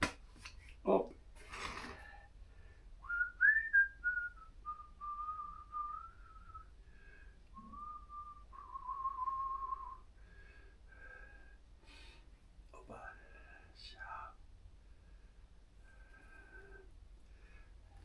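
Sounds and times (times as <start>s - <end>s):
man whistling a tune: 3.0s - 6.7s, 7.6s - 10.0s.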